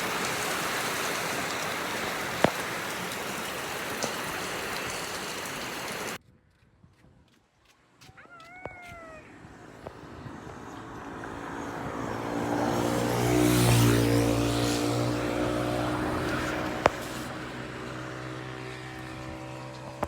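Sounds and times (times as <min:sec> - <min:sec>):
vehicle passing by: 0:09.1 - 0:20.0.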